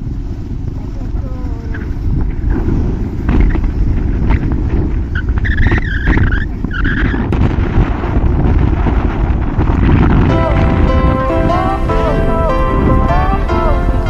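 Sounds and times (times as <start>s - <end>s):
road and wind noise: 0.0s - 14.0s
high-pitched squeal: 10.3s - 14.0s.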